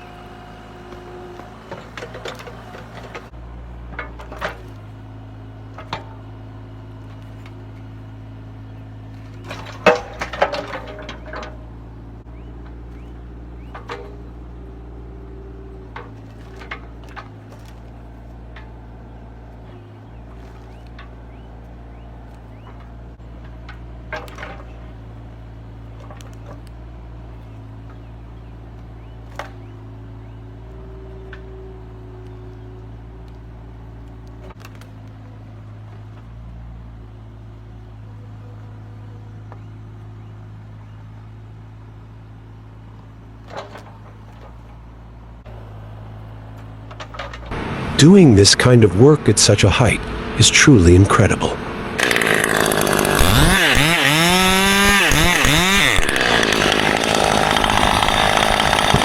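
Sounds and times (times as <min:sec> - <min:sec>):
engine humming: 0:00.0 - 0:59.0
sharp knocks and cracks: 0:00.9 - 0:08.0, 0:08.8 - 0:15.0, 0:15.8 - 0:30.7, 0:32.8 - 0:36.4, 0:42.9 - 0:45.5, 0:46.4 - 0:47.6, 0:52.0 - 0:59.0.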